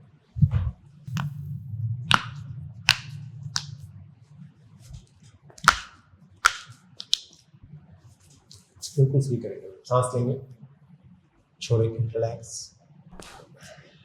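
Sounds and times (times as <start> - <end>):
low hum: 0.4 - 6.4.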